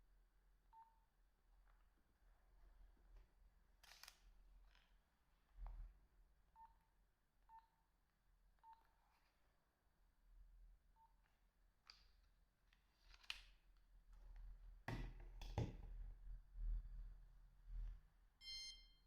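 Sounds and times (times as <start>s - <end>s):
high electronic beep: 18.4s - 19.0s.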